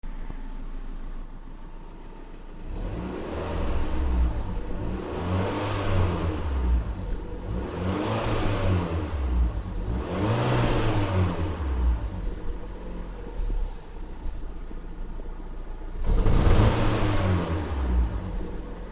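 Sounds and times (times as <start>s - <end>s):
misfiring engine revving: 2.6s - 12.6s, 16.0s - 18.9s.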